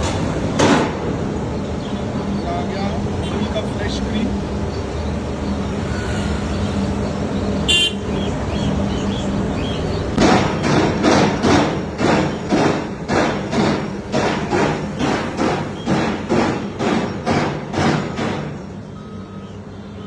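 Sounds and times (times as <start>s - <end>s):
street traffic noise: 0.0s - 20.0s
car horn toot: 7.7s - 8.1s
loud regular thuds: 10.1s - 18.6s.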